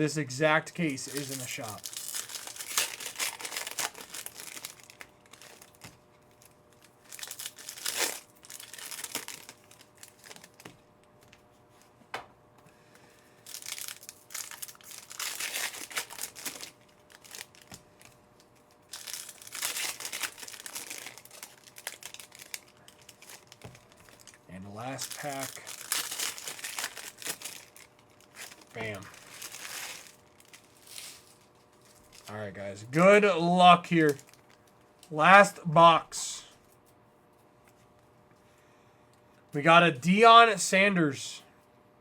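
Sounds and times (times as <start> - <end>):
foil wrappers crinkling and tearing: 0.8 - 11.4, 13.4 - 32.4, 33.6 - 35.4.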